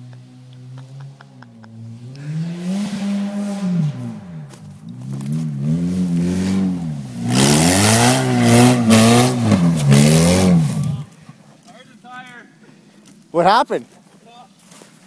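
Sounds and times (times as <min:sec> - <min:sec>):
car engine revving: 0:00.0 - 0:11.2.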